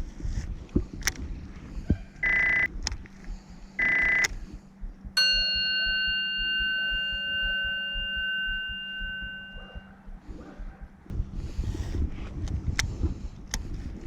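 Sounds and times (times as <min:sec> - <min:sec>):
bell-like chime ringing: 0:05.2 - 0:10.0.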